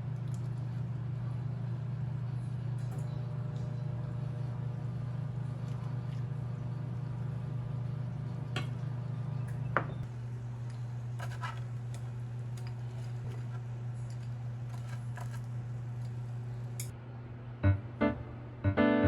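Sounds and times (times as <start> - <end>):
light clicks and scrapes: 10.6 - 16.2.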